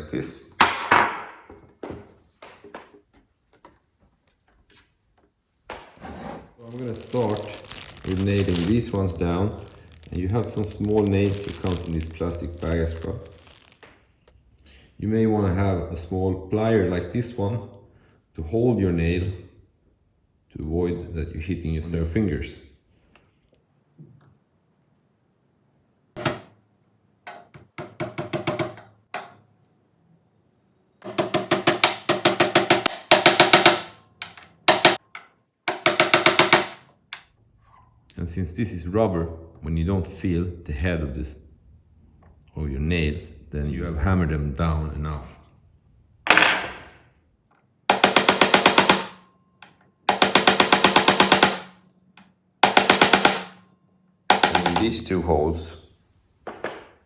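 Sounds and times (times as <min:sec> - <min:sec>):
hammer tapping nails: 0:27.3 - 0:29.4, 0:31.0 - 0:37.3, 0:47.9 - 0:51.8, 0:52.6 - 0:53.6, 0:54.3 - 0:54.9.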